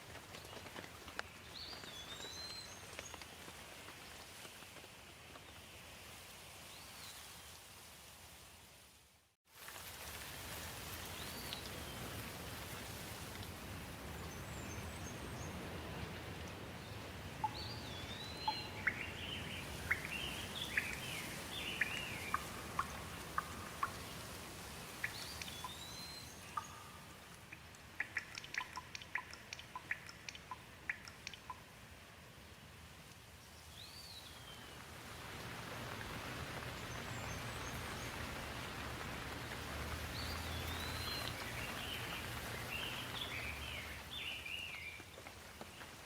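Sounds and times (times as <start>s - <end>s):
steady rain: 0.0s - 46.0s
water dripping: 9.6s - 31.8s, 34.9s - 46.0s
birds chirping: 14.2s - 24.2s, 28.0s - 31.6s, 36.6s - 45.0s.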